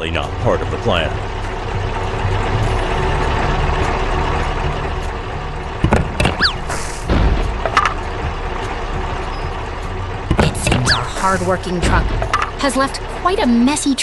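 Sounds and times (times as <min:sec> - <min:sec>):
cartoon truck engine running: 0:00.0 - 0:14.0
crates thudding and crashing: 0:05.8 - 0:08.1
short whistling glides: 0:06.4 - 0:07.0.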